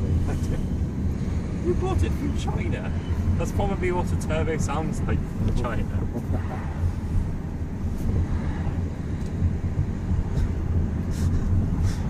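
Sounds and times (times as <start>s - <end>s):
car engine and road noise drone: 0.0s - 12.0s.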